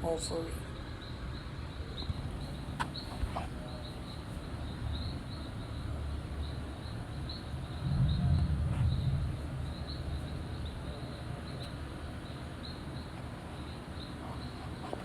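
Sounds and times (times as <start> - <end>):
low rumble: 7.6 - 11.1.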